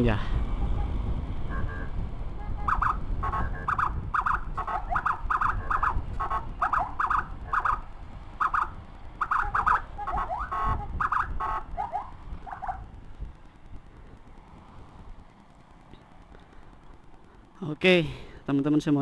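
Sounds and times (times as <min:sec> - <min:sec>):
low motorcycle rumble: 0:00.0 - 0:19.0
motorcycle siren blips and yelps: 0:00.5 - 0:15.3.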